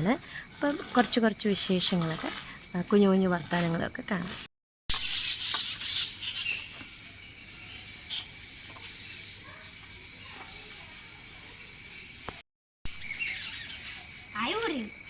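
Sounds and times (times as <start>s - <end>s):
high insect drone: 0.0s - 15.0s
birds chirping: 4.9s - 15.0s.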